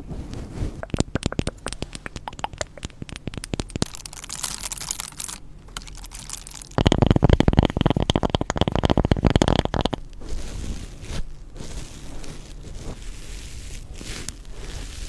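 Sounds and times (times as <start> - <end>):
stones clicking together: 0.8 - 10.0.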